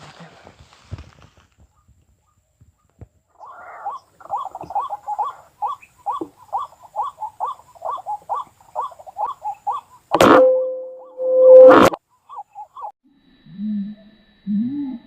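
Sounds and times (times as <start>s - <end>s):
bird calling hoarsely: 3.4s - 12.9s.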